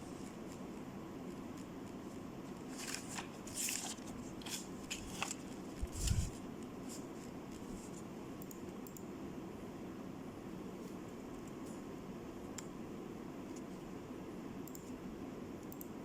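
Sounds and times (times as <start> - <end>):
steady low hum: 0.0 - 16.0
clicks and rustles of handling: 2.6 - 8.1.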